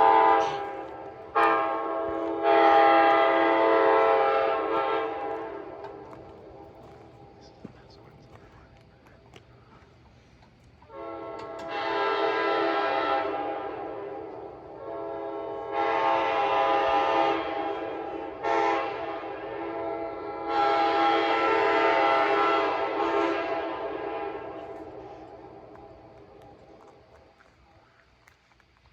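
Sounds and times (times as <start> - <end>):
locomotive air horn blasts: 0.0 - 7.4, 10.9 - 26.4.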